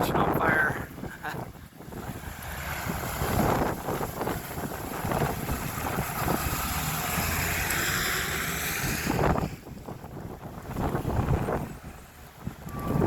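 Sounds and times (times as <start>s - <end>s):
storm wind buffeting microphone: 0.0s - 13.0s.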